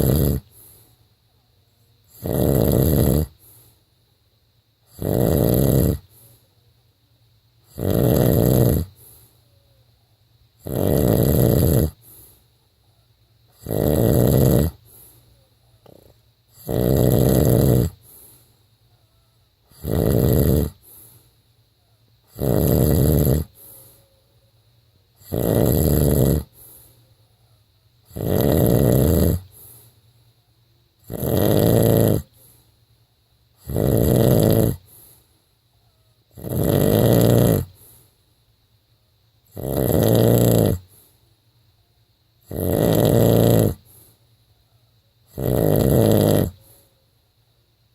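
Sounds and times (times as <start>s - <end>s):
man snoring: 0.0s - 0.6s, 2.1s - 3.4s, 4.9s - 6.1s, 7.7s - 9.0s, 10.6s - 12.2s, 13.6s - 14.9s, 15.9s - 18.3s, 19.7s - 21.1s, 22.3s - 23.8s, 25.2s - 26.9s, 28.1s - 29.8s, 31.1s - 32.5s, 33.6s - 35.1s, 36.4s - 38.0s, 39.5s - 40.9s, 42.5s - 44.0s, 45.3s - 46.7s
faint breathing: 0.0s - 2.3s, 3.2s - 4.2s, 5.9s - 6.8s, 8.8s - 10.1s, 11.7s - 22.4s, 23.0s - 25.3s, 26.0s - 28.2s, 28.8s - 30.6s, 32.1s - 33.8s, 34.7s - 36.5s, 37.6s - 38.6s, 40.8s - 41.5s, 43.7s - 45.2s, 46.5s - 47.2s.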